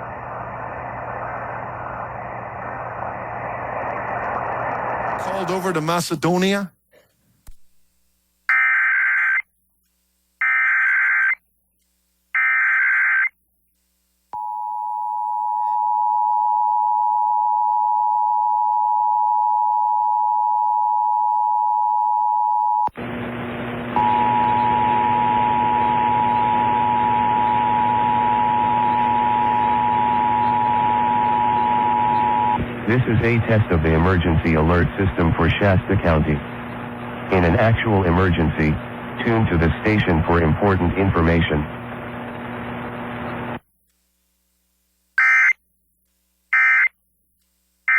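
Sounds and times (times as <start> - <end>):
loud hiss and hum: 32.6 - 43.6.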